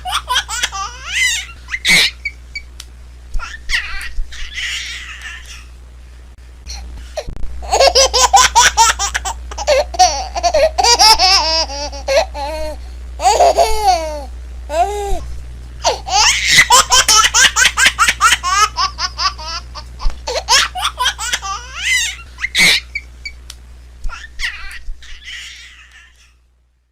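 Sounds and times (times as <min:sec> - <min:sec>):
baby laughing: 0:00.0 - 0:02.4, 0:03.4 - 0:05.7, 0:07.6 - 0:15.2, 0:15.8 - 0:23.1, 0:24.1 - 0:26.3.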